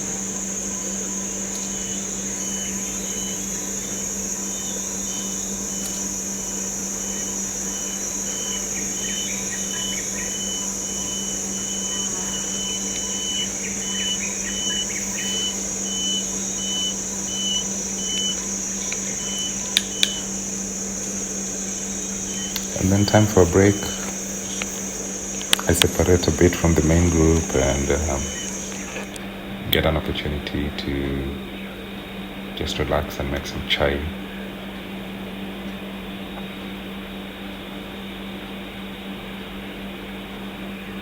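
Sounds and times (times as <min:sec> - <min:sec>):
bird piping note: 0:00.0 - 0:29.2
birds chirping: 0:00.0 - 0:36.8
insects droning: 0:00.0 - 0:41.0
low steady hum: 0:00.0 - 0:41.0
sharp clicks: 0:09.0 - 0:29.2.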